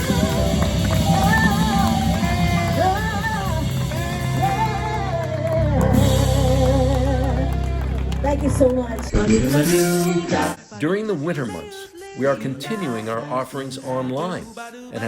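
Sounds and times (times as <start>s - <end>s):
person singing: 0.0s - 8.5s, 9.1s - 15.0s
instrumental accompaniment with bass: 0.0s - 10.6s.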